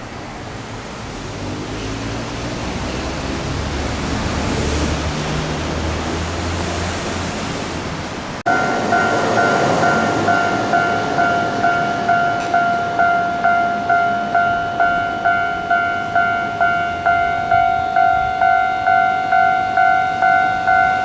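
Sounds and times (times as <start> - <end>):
train wheel and running noise: 3.3 - 21.0
level crossing alarm ringing: 8.5 - 21.0.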